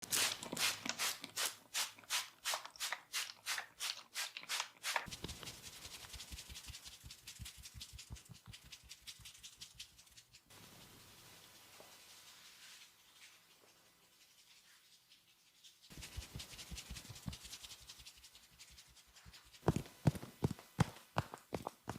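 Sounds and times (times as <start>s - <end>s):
hand slapping massage: 5.1s - 9.8s, 16.0s - 18.8s
tapping strokes with dull thuds: 19.6s - 21.9s.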